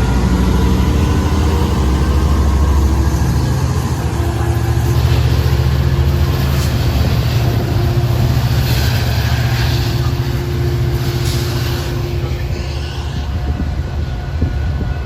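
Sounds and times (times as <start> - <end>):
diesel locomotive engine rumble: 0.0 - 15.0.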